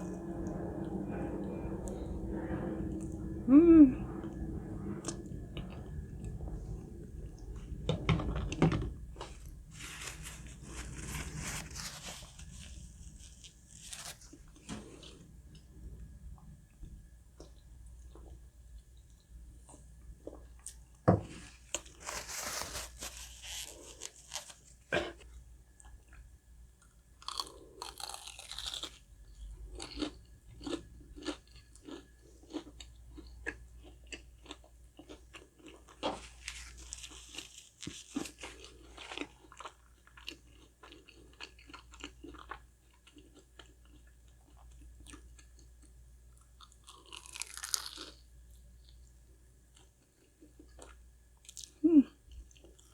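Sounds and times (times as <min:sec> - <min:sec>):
person crunching fried food: 0:27.2 - 0:29.0, 0:29.8 - 0:44.1, 0:46.6 - 0:48.2.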